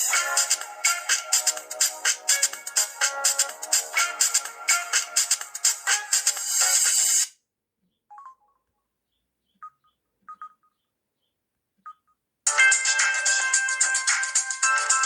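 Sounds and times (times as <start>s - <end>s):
phone ringtone: 8.1s - 8.6s, 12.5s - 15.0s.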